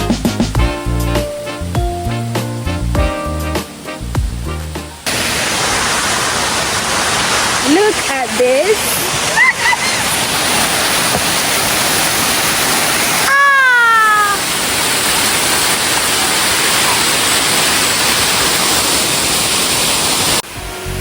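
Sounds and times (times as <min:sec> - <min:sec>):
waterfall rushing: 0:00.0 - 0:21.0
high voice-like cry: 0:13.3 - 0:14.5.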